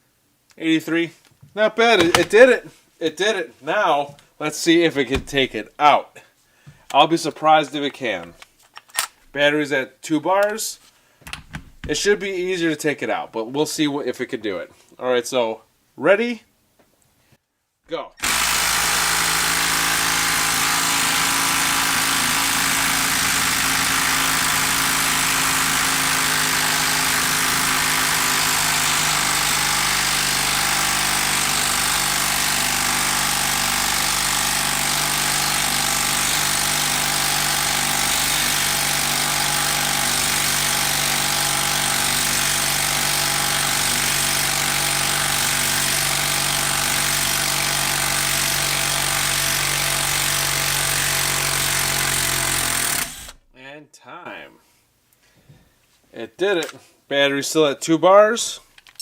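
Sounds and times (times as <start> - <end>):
impact driver hammering: 2.0 - 2.4, 18.2 - 53.4.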